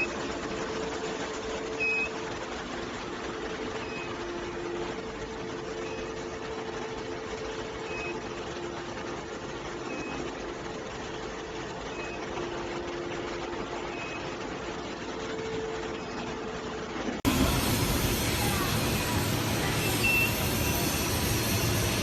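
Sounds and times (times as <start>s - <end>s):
machinery two-tone hum: 0.0s - 22.0s
short high beep: 19.8s - 20.8s.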